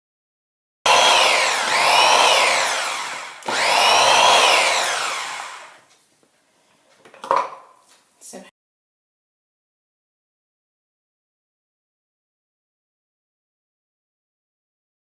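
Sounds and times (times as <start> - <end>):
electric blender motor running: 0.9 - 5.9.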